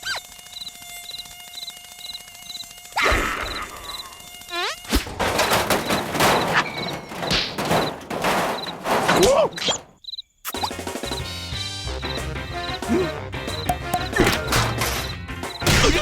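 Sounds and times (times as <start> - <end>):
faint insect-like chirps: 0.0 - 5.0, 10.0 - 10.7
short squeaky glides: 4.5 - 10.7
cartoon knocks and hits: 13.6 - 14.8.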